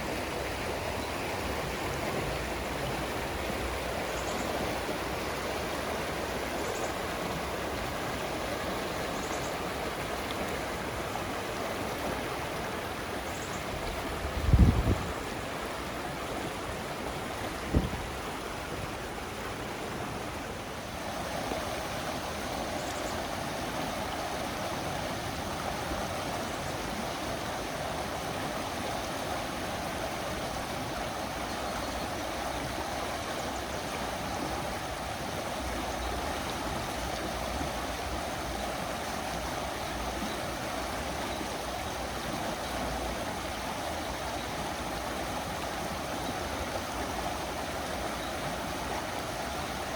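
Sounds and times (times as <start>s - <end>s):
river water rushing and gurgling: 0.0s - 49.9s.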